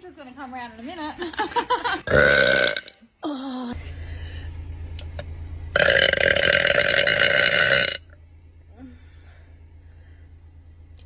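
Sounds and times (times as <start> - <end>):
woman burping: 2.0 - 3.8.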